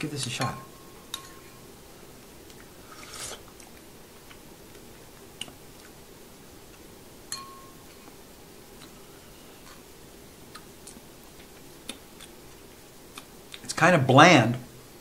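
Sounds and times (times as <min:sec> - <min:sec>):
quiet eating: 0:00.3 - 0:13.8
slurp of soup: 0:02.9 - 0:03.4.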